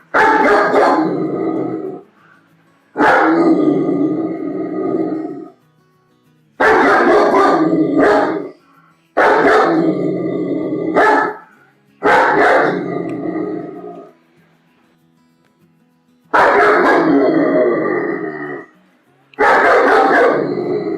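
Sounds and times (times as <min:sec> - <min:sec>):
dog barking loudly: 0:00.1 - 0:01.4, 0:03.0 - 0:03.7, 0:06.6 - 0:08.6, 0:09.2 - 0:10.0, 0:10.9 - 0:13.0, 0:16.4 - 0:17.6, 0:19.4 - 0:20.9.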